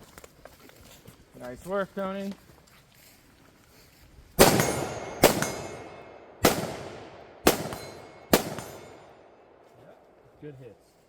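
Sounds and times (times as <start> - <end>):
metallic ring of steel targets: 4.4 - 6.4, 7.5 - 9.4
gunshots echoing: 4.4 - 9.6.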